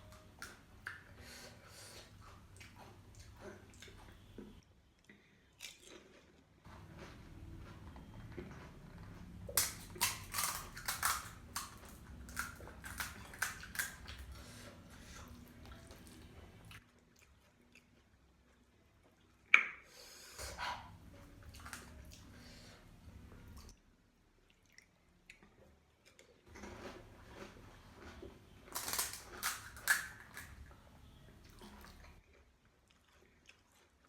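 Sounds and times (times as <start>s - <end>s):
crunching snack food: 9.5s - 14.3s, 26.5s - 30.6s.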